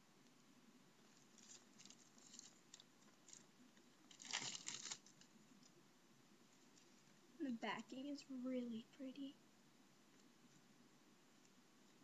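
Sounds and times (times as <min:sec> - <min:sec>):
plastic wrapper crinkling: 0:01.1 - 0:05.7.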